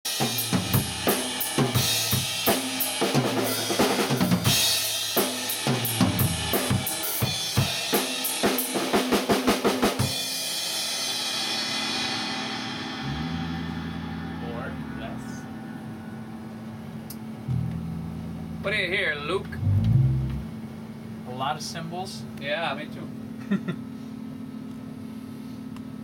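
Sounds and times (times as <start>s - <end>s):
drum kit playing a beat: 0.0s - 15.4s
cymbals ringing: 10.0s - 18.8s.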